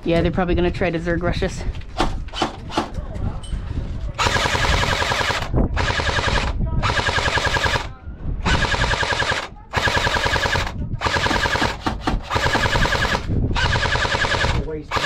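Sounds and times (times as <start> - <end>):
airsoft rifle firing bursts: 4.2 - 7.9, 8.5 - 15.0.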